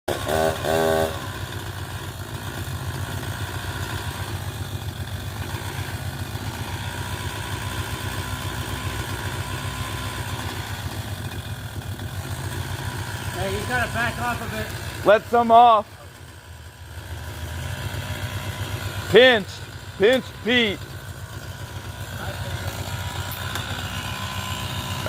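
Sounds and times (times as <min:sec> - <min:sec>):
high-pitched engine bursts: 0:00.1 - 0:01.5, 0:12.2 - 0:16.0, 0:17.3 - 0:25.0
engine idling: 0:00.1 - 0:25.0.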